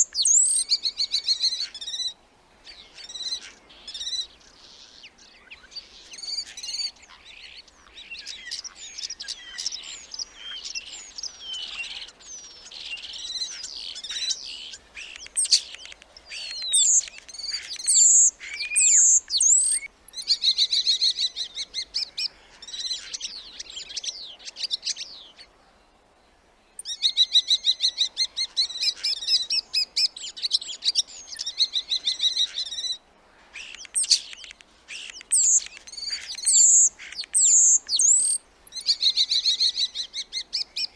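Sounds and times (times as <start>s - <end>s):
starling singing: 12.8s - 22.1s, 33.6s - 40.9s.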